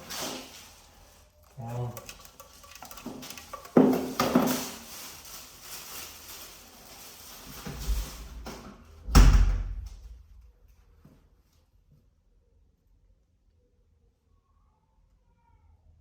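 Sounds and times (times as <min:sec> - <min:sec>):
rustling and scraping: 0:00.0 - 0:09.0
loud thump: 0:09.1 - 0:10.1.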